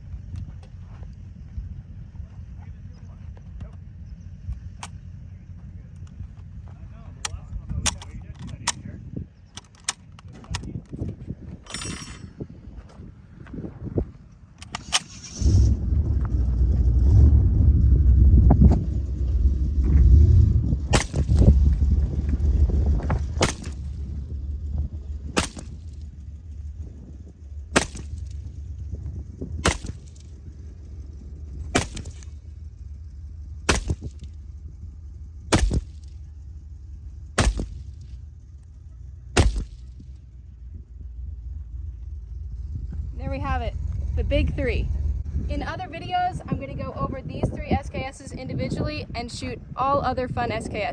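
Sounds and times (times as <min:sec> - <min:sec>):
wind on microphone rumble: 0:00.0 - 0:50.9
rifle shots: 0:20.9 - 0:21.6, 0:23.3 - 0:24.0, 0:25.3 - 0:26.0, 0:27.7 - 0:28.4, 0:29.6 - 0:30.2, 0:31.7 - 0:32.4, 0:33.7 - 0:34.2, 0:35.5 - 0:36.0, 0:37.4 - 0:38.0, 0:39.4 - 0:40.0.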